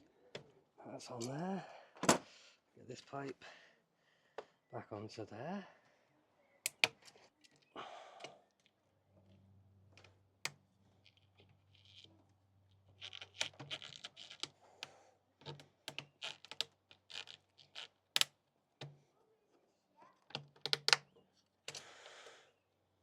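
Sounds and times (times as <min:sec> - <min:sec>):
plastic and rubber parts handled: 0:09.9 - 0:14.6, 0:15.4 - 0:19.0.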